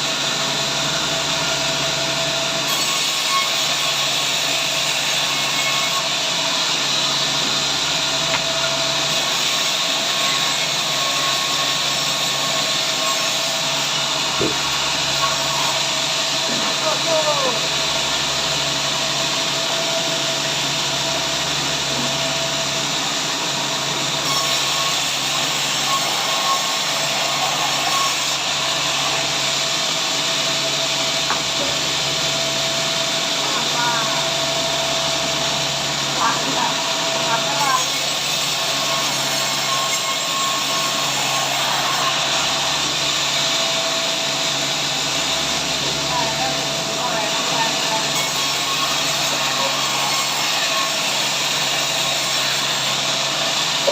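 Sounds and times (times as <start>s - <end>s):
sawmill saw running: 0.0s - 53.9s.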